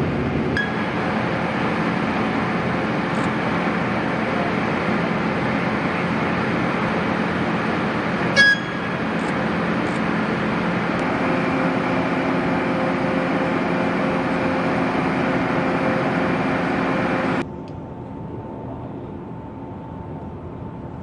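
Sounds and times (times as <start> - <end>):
hum with steady tone: 0.0 - 21.0
jet engine noise: 0.0 - 21.0
high squeal: 8.3 - 9.0.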